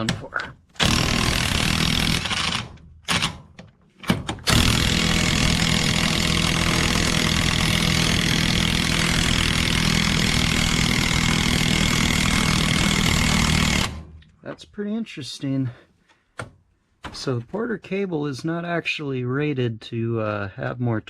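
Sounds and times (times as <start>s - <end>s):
impact wrench hammering: 0.8s - 14.0s.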